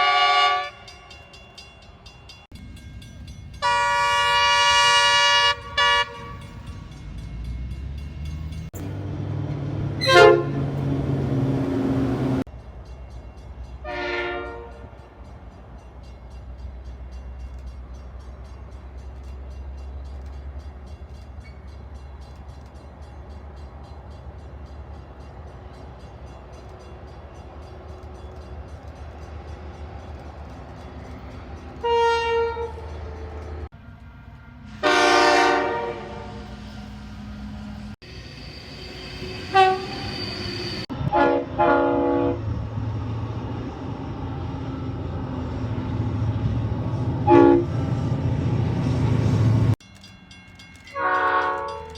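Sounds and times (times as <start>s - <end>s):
train horn blasts: 0.0s - 1.2s, 3.6s - 6.7s, 9.9s - 12.4s, 13.8s - 15.0s, 31.8s - 33.6s, 34.7s - 36.6s, 39.4s - 40.1s, 40.9s - 42.6s, 47.0s - 48.1s, 50.9s - 51.9s
low train rumble: 0.0s - 51.9s.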